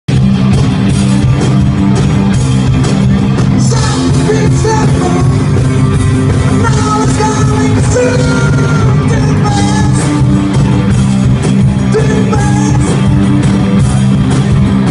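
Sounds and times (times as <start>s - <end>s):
rock band playing: 0.1s - 14.9s
person singing: 3.5s - 5.6s, 6.4s - 10.3s, 11.8s - 13.1s.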